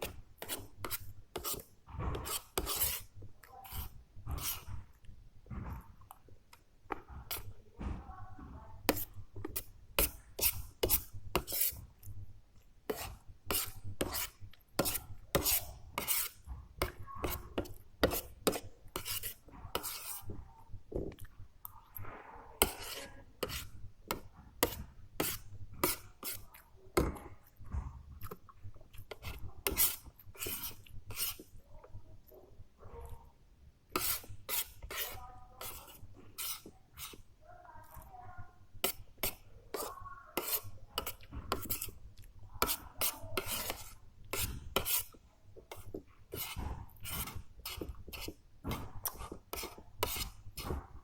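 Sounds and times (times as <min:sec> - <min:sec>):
utensil scraping a plate: 0:12.9 - 0:20.4, 0:22.6 - 0:26.4, 0:33.9 - 0:37.3, 0:38.8 - 0:42.0, 0:42.6 - 0:50.8.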